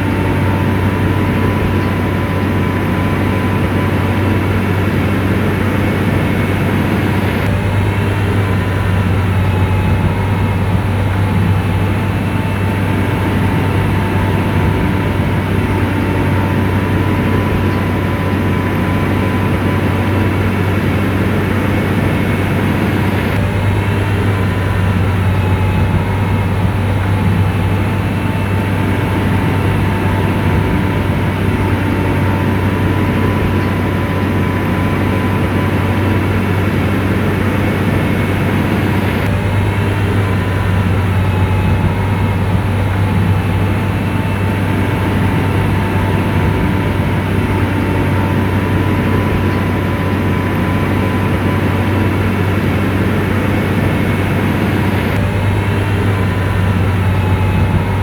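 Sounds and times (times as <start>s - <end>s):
diesel engine running: 0.0s - 58.0s.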